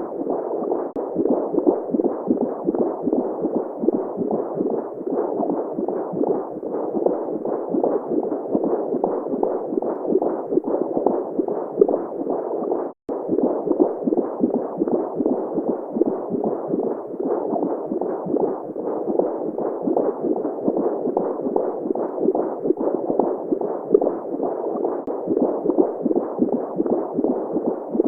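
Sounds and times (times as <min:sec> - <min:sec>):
heartbeat-like pulsing: 0:00.0 - 0:28.0.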